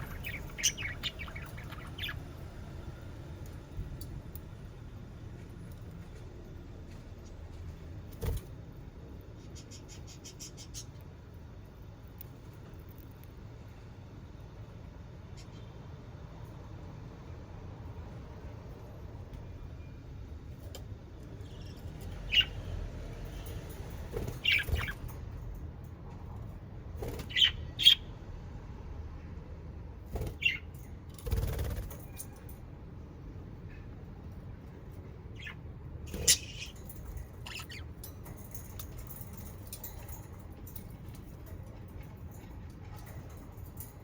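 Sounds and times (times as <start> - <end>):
budgerigars chirping: 0.0 - 2.4, 24.4 - 25.1, 27.3 - 28.0, 35.4 - 36.8, 37.4 - 37.9.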